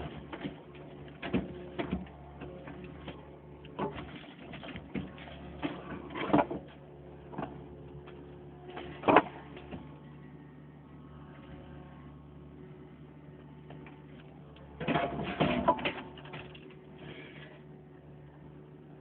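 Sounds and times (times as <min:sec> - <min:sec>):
backhoe engine hum: 0:00.0 - 0:19.0
metallic clanks and knocks: 0:14.6 - 0:16.7.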